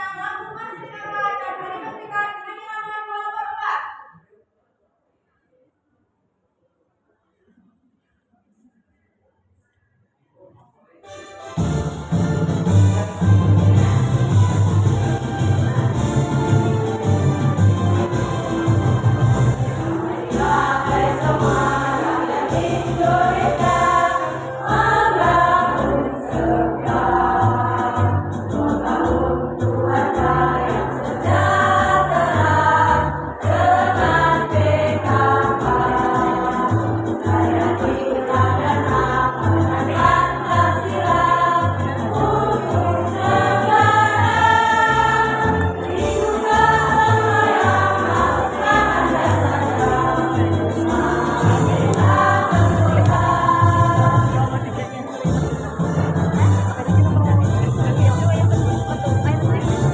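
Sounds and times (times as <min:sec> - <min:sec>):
bass line accompaniment: 0:11.5 - 0:59.9
women's choir singing: 0:19.3 - 0:54.9.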